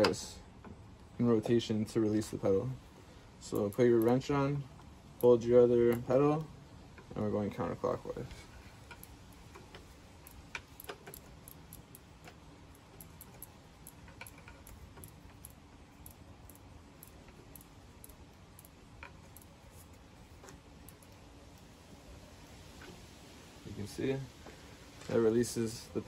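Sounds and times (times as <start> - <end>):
pedal wrench metal clicks: 3.4 - 7.1, 8.8 - 21.7.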